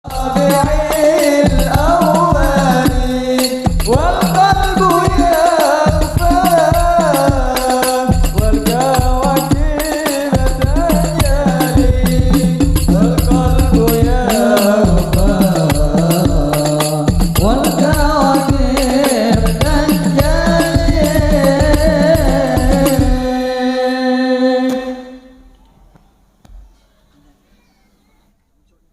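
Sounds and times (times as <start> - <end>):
heavy bass beat: 10.5 - 16.5.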